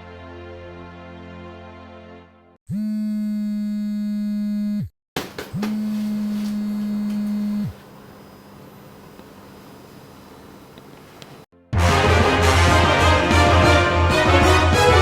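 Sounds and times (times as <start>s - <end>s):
long electronic tones: 2.7s - 4.9s, 5.6s - 10.8s
clicks: 10.7s - 11.5s.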